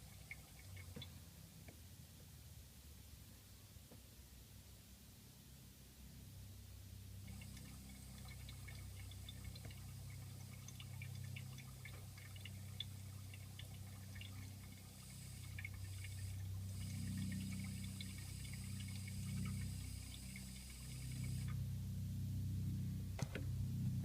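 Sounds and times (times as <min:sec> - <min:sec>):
smoke machine humming: 0:10.1 - 0:24.0.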